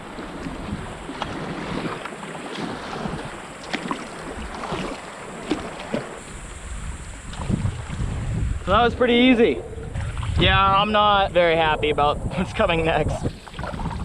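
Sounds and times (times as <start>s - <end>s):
river water splashing: 0.0s - 11.5s, 12.4s - 14.0s
wind buffeting microphone: 0.0s - 14.0s
short sharp splashes or knocks: 1.1s - 6.2s.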